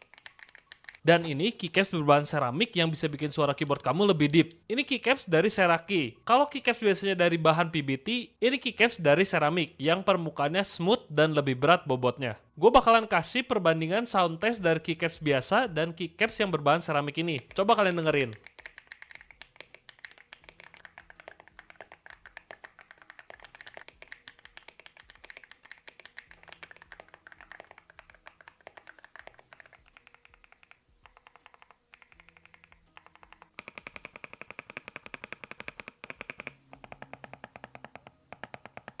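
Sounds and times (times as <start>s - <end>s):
mechanical keyboard keys clacking: 0.0s - 4.6s, 17.4s - 39.0s.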